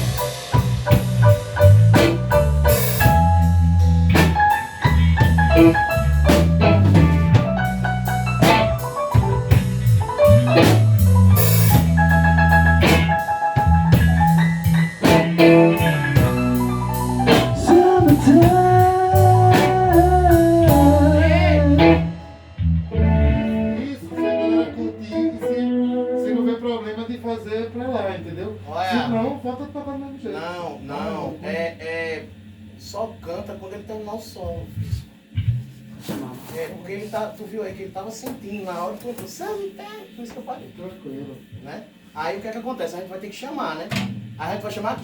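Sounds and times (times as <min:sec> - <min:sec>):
strong low bass: 0:00.0 - 0:24.0, 0:34.5 - 0:36.0, 0:43.9 - 0:44.9
live band playing: 0:00.0 - 0:26.8.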